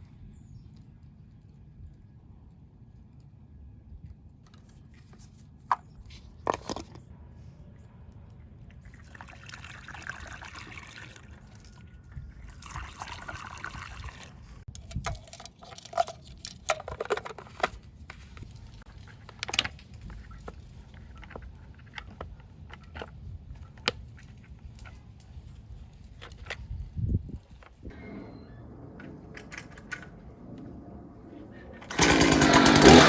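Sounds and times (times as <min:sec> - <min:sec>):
liquid pouring into tank: 0:08.9 - 0:11.4.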